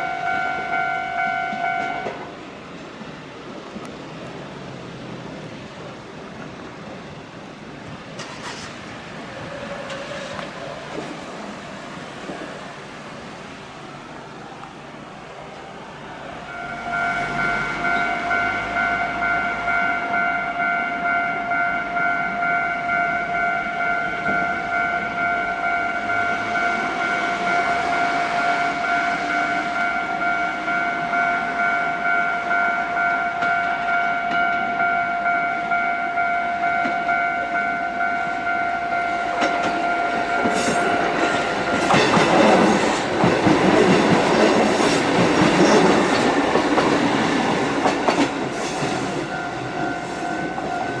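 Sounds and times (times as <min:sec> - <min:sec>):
level crossing warning bell: 0:00.0 - 0:02.3, 0:16.3 - 0:46.9, 0:48.1 - 0:51.0
train wheels clattering over rails: 0:39.3 - 0:51.0.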